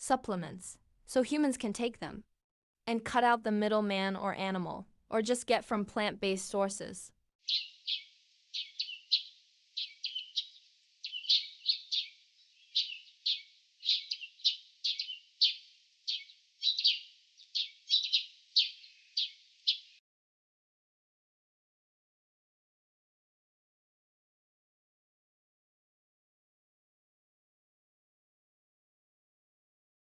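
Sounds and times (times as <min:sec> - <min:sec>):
bird chirping: 0:07.4 - 0:20.0.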